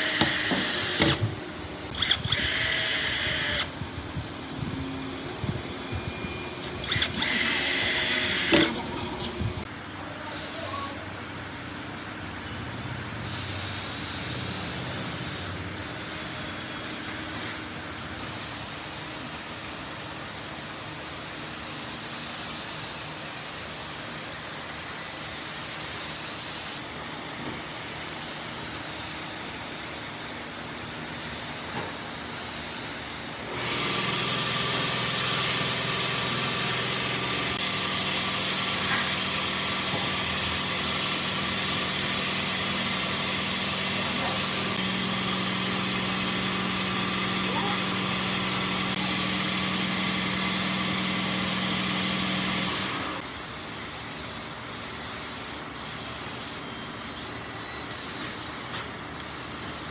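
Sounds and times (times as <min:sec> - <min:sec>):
power tool hiss: 0:00.0 - 0:03.8, 0:05.1 - 0:09.7, 0:10.3 - 0:11.0, 0:13.2 - 0:59.9
motor humming: 0:00.0 - 0:09.7, 0:33.4 - 0:53.2.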